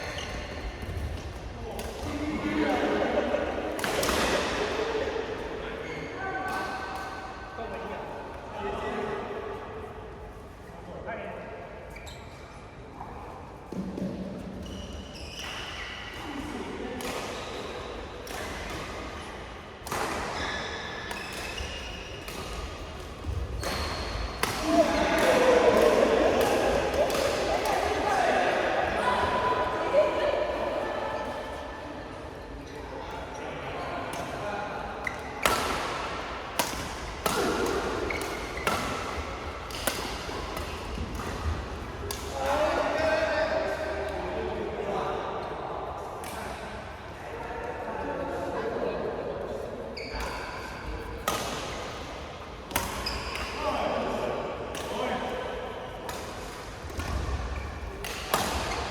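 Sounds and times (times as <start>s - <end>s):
voices in a hall: 0.0s - 58.9s
rackets hitting shuttlecock: 21.1s - 28.2s, 35.1s - 42.4s, 51.2s - 52.0s, 56.1s - 58.9s
sneakers squeaking on court: 38.1s - 39.2s, 50.0s - 51.0s.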